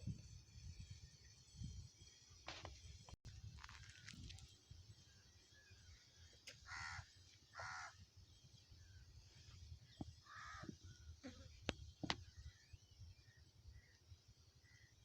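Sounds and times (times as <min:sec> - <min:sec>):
crow cawing: 0:06.6 - 0:08.0, 0:10.2 - 0:10.7.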